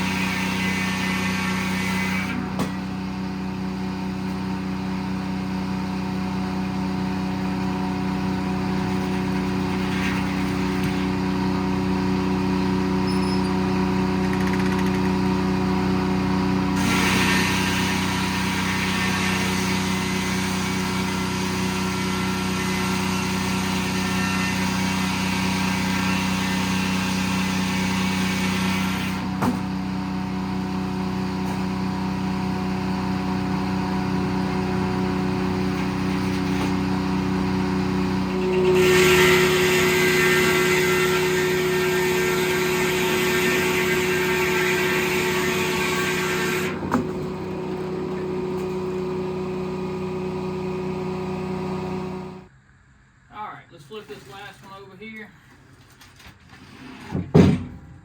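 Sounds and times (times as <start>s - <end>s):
saw blade cutting log: 0.0s - 2.8s, 8.8s - 11.3s, 16.7s - 29.7s, 35.6s - 49.0s
diesel engine running: 0.0s - 52.5s.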